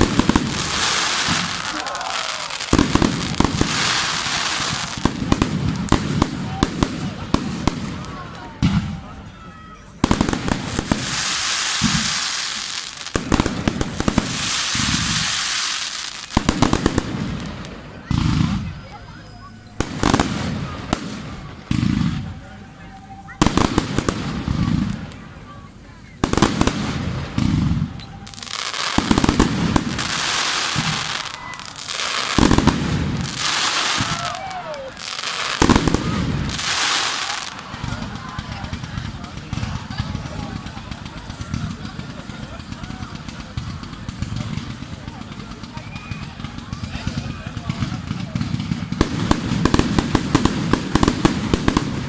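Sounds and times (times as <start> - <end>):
firework bang: 0.0 - 9.1
crackling firework showers: 0.0 - 52.0.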